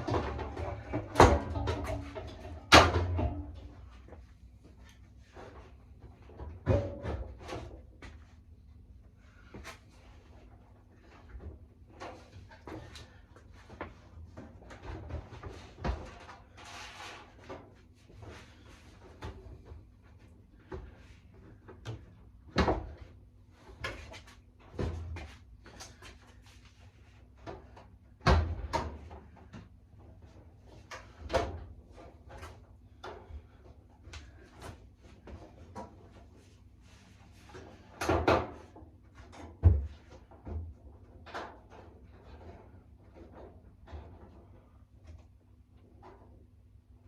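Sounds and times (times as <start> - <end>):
knocks of dryer parts handled: 0.0 - 3.9.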